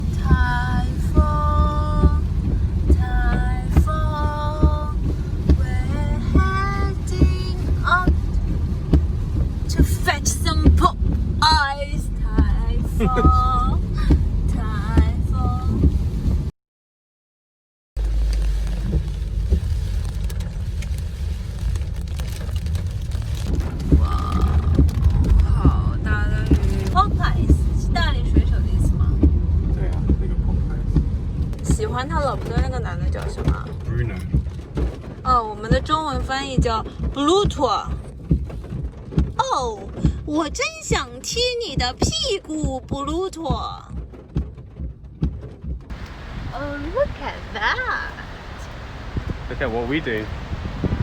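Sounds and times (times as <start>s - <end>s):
heavy bass beat: 0.0s - 16.1s
vehicle rumbling: 0.0s - 16.5s, 18.0s - 51.0s.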